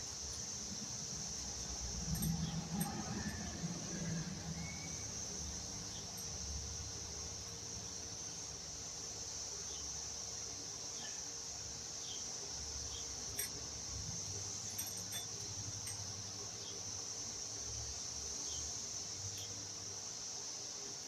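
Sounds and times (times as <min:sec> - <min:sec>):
high-pitched insect chorus: 0:00.0 - 0:21.0
bicycle chain clicking: 0:02.0 - 0:03.7, 0:14.6 - 0:16.1.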